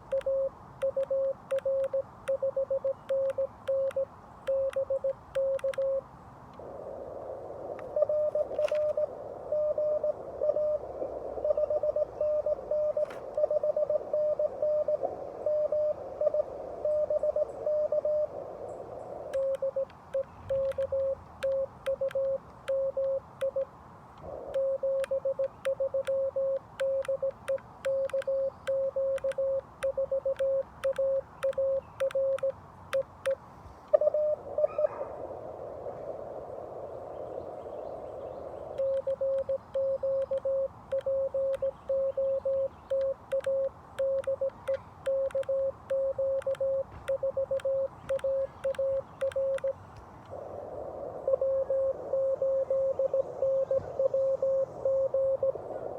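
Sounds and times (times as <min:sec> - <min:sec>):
morse code tone: 0:00.0 - 0:06.0, 0:08.0 - 0:10.8, 0:11.4 - 0:18.3, 0:19.4 - 0:23.7, 0:24.6 - 0:33.4, 0:34.0 - 0:34.8, 0:38.8 - 0:49.8, 0:51.3 - 0:55.6
radio receiver hiss: 0:00.0 - 0:55.9
morse paddle clicks: 0:19.4 - 0:23.7, 0:24.6 - 0:33.4, 0:38.8 - 0:42.0, 0:42.8 - 0:49.8.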